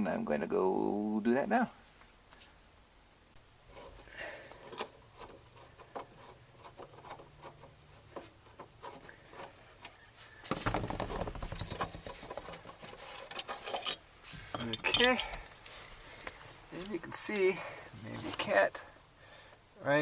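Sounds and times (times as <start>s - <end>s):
rubbing and handling noise: 3.6s - 18.7s.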